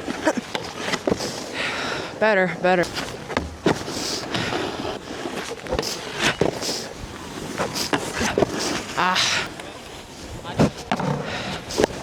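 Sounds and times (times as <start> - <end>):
snowboard scraping over snow: 2.8 - 12.0.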